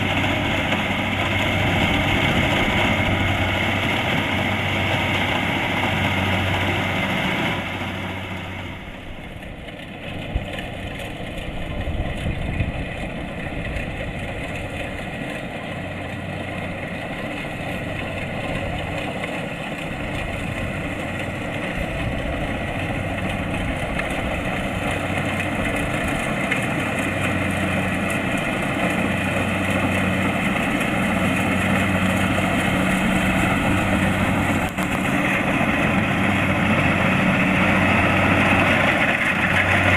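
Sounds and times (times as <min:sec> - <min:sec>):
combine harvester engine running: 0:00.0 - 0:39.9.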